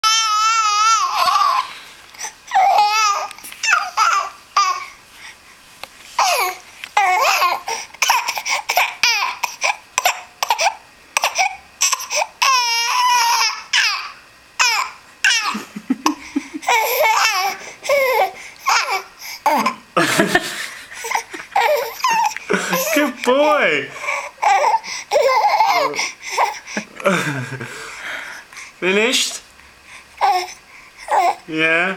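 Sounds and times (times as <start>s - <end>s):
baby crying: 0.0s - 5.0s, 6.2s - 19.8s, 21.0s - 23.2s, 23.9s - 27.2s, 30.2s - 31.5s
adult laughing: 15.4s - 17.0s, 20.0s - 23.2s, 26.7s - 27.9s.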